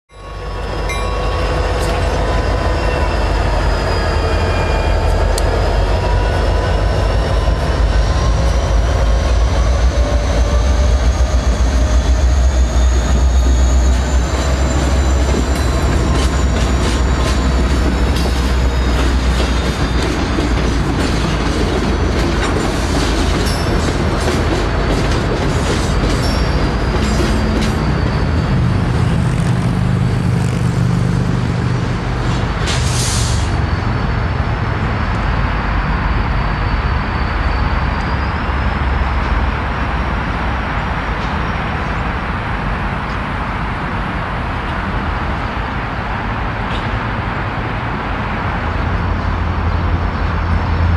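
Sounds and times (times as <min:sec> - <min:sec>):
wheel squeal: 0:00.1 - 0:30.6, 0:32.7 - 0:40.4
train low rumble: 0:00.1 - 0:50.9
wheels clicking over rail joints: 0:15.1 - 0:28.1.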